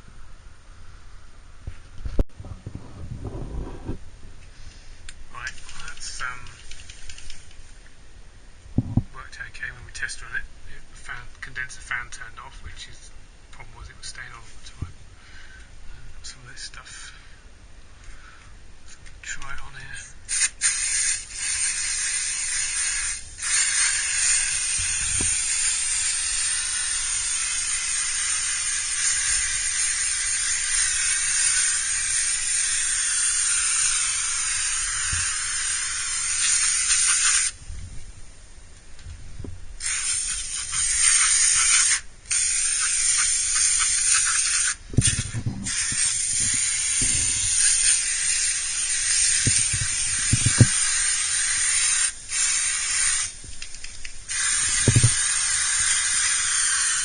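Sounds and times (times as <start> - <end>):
aerosol spray hissing: 5.6 - 7.7, 20.3 - 37.6, 39.8 - 57.0.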